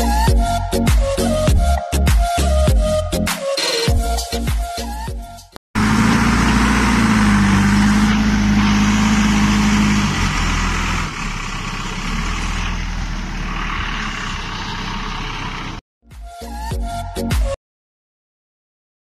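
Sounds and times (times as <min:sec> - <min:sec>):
diesel engine drone: 0:05.8 - 0:15.8.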